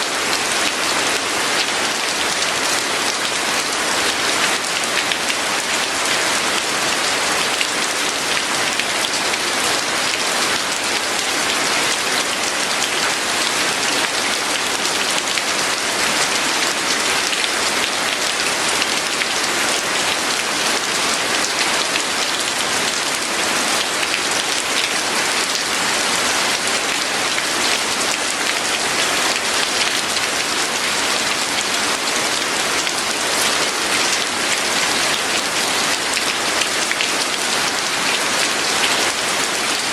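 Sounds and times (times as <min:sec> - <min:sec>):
steady rain patter: 0:00.0 - 0:39.9.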